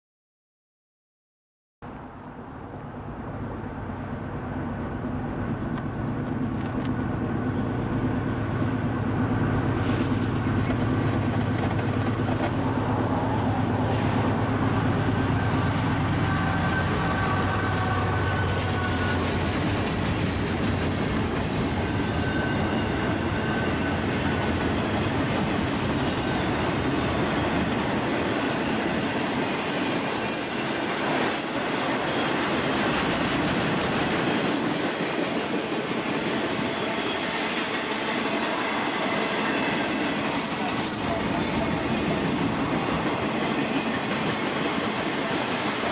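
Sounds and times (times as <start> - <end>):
train wheels rumbling on rail: 2.1 - 45.9
clickety-clack over rail joints: 5.0 - 13.0, 13.9 - 45.9
high wheel squeals: 12.6 - 19.5, 21.8 - 27.4.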